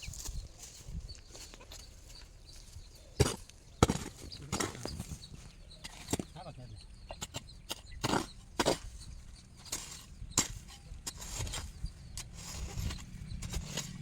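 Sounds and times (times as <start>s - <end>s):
sharp knocks and scrapes: 3.2s - 6.5s, 7.1s - 14.0s.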